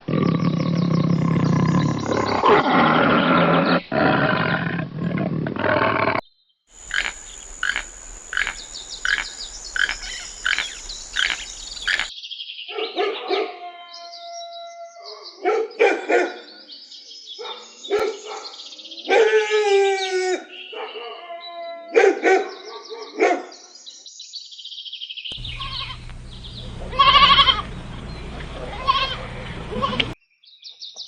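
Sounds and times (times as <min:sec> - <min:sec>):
animal calls: 0:00.0 - 0:06.2, 0:06.8 - 0:12.1, 0:25.4 - 0:30.2
steady high hiss: 0:06.8 - 0:12.1.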